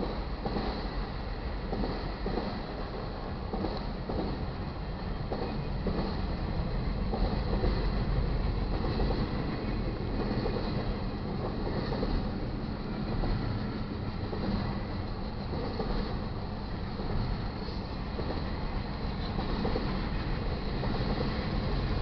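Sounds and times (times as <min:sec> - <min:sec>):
freight train rumbling on rails: 0:00.0 - 0:22.0.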